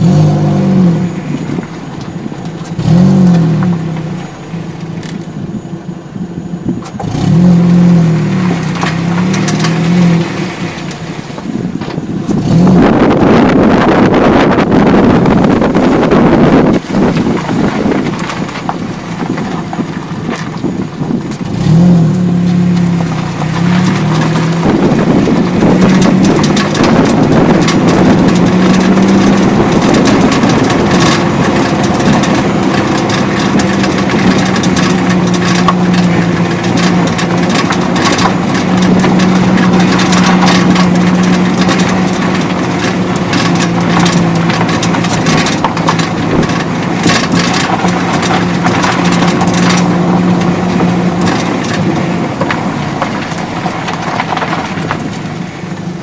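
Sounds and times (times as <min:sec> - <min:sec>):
car engine running: 0:00.0 - 0:56.0
metallic knocking rattle: 0:22.8 - 0:55.5.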